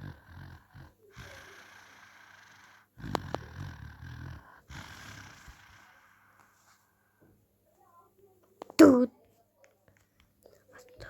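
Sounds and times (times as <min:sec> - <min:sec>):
snoring: 0:00.0 - 0:06.6.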